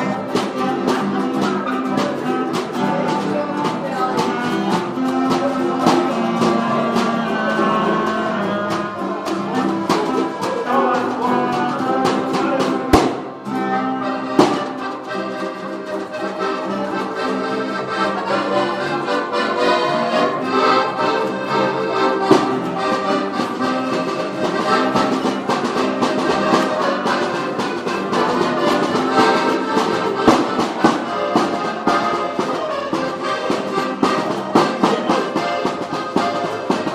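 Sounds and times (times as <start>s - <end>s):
instrumental jam music: 0.0s - 36.9s
sharp percussive hits: 12.1s - 13.5s.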